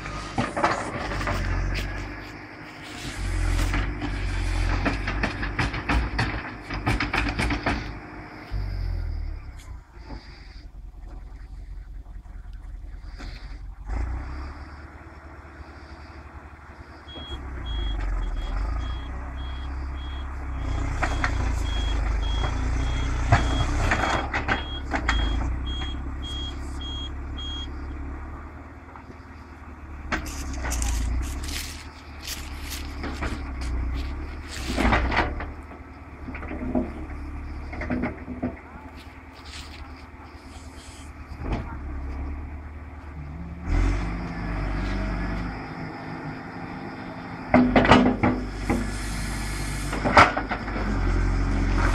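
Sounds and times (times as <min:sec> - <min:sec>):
diesel engine under load: 0:00.0 - 0:51.9
machine clanks and knocks: 0:04.8 - 0:07.9, 0:47.5 - 0:48.8
reverse alarm beeping: 0:17.1 - 0:28.0.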